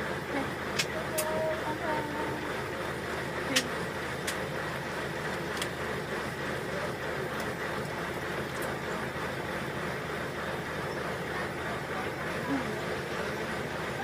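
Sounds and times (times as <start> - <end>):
vehicle engine and road noise: 0.0 - 14.0.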